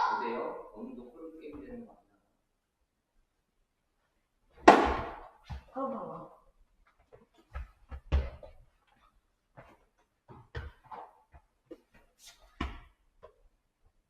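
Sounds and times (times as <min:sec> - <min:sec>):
ball bouncing and knocking: 0:07.1 - 0:08.6.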